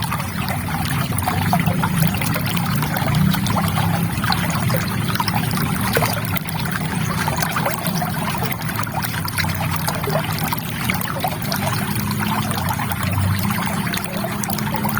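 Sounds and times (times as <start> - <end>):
river water trickling: 0.0 - 14.9.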